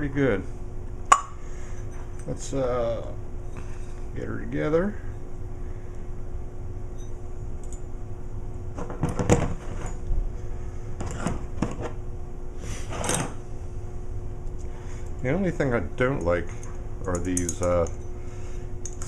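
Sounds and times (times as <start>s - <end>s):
metal parts clinking and knocking: 16.2s - 18.0s.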